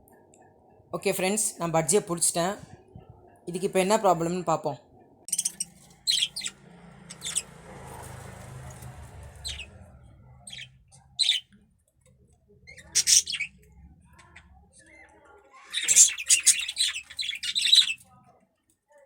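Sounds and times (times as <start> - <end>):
budgerigar chirping: 5.3 - 7.5, 9.4 - 9.7, 10.4 - 11.5, 12.7 - 13.5, 15.7 - 18.0
handling rumble: 5.6 - 11.3.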